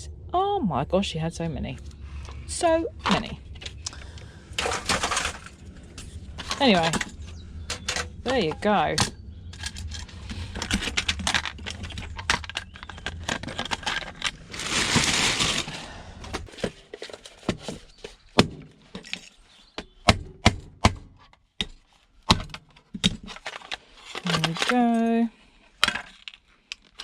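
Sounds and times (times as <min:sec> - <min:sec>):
electronics parts cracking and clicking: 0:03.0 - 0:19.9, 0:21.2 - 0:25.2, 0:25.8 - 0:27.0.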